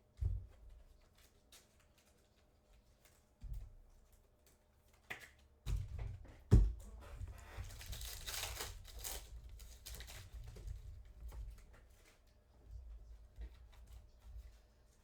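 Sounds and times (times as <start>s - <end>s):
wrapper tearing and crinkling: 7.8s - 10.2s.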